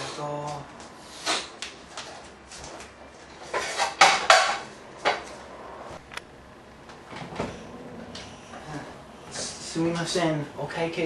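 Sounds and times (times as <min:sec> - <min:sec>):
dishes clattering: 0:03.4 - 0:05.2.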